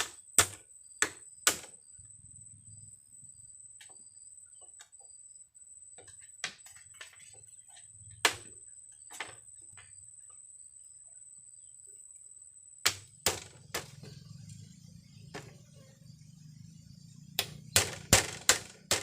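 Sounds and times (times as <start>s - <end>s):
high-pitched whine: 13.5s - 18.9s
sharp knocks and clicks: 17.4s - 19.0s.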